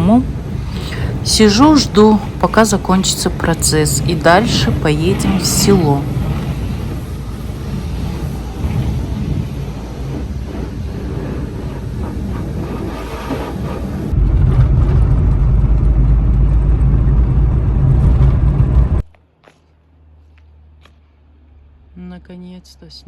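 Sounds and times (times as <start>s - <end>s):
pressure washer jet spraying car: 4.4s - 14.1s.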